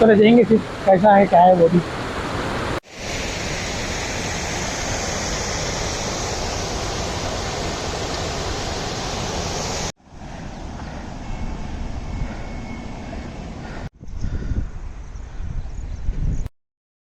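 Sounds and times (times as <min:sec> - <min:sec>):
wind noise: 0:02.1 - 0:16.5
water pouring down waterfall: 0:02.8 - 0:09.9.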